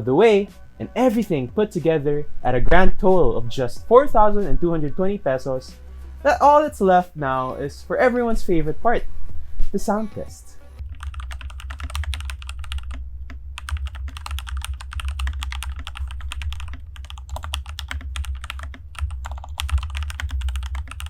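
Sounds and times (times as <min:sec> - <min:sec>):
low steady hum: 0:00.0 - 0:21.0
fast typing on mechanical keyboard: 0:10.8 - 0:13.0, 0:13.6 - 0:21.0.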